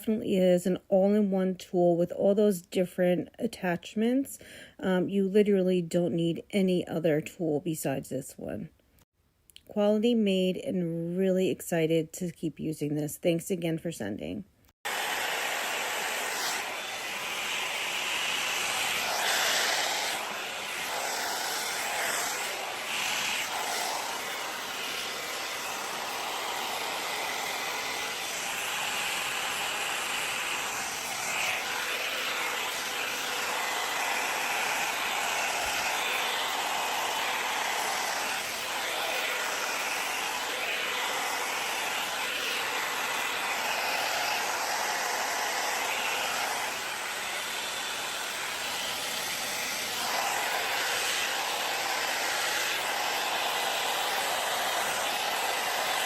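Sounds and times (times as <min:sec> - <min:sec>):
hot air brush blowing: 0:14.7 - 0:56.0.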